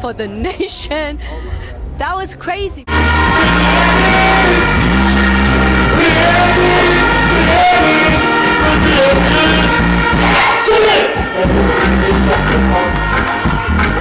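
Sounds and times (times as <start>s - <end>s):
person singing: 2.9s - 14.0s
reggae music with heavy bass: 2.9s - 14.0s.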